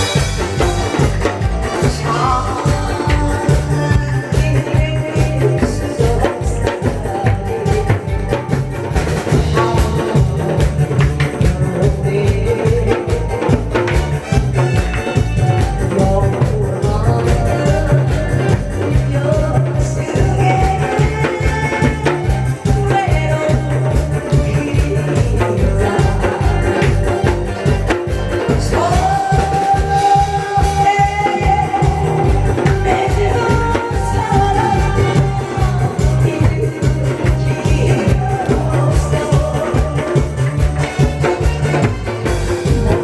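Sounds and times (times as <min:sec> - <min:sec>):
upbeat music with steady beat: 0:00.0 - 0:43.0.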